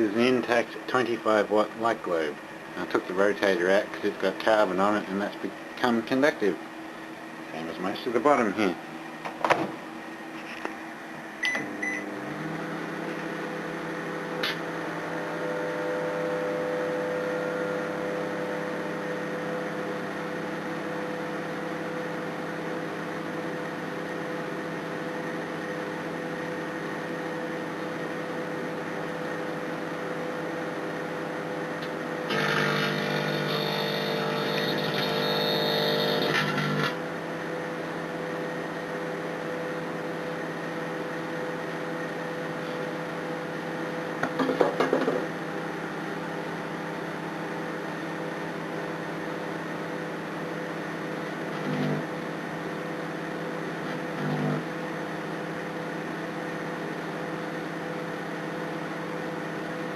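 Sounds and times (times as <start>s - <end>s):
microwave electrical hum: 0.0s - 59.9s
microwave short beeps: 11.4s - 12.1s
harsh buzz: 32.2s - 37.1s, 51.4s - 52.2s, 53.8s - 54.7s.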